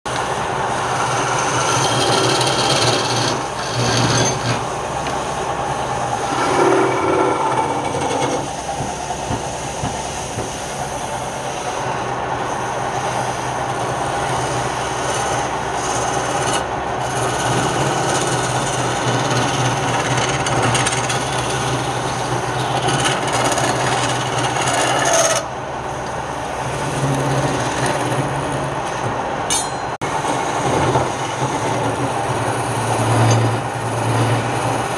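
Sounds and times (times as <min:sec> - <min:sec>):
wood lathe motor hum: 0:00.1 - 0:28.8
tool scraping spinning wood: 0:00.8 - 0:34.9.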